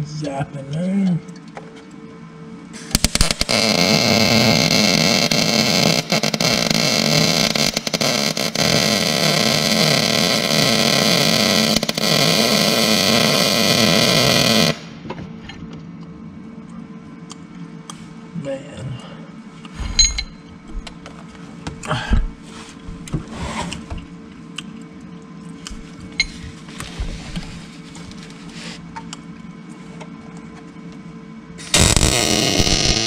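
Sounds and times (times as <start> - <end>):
electric arc welding crackling: 2.9 - 15.0, 31.6 - 33.0.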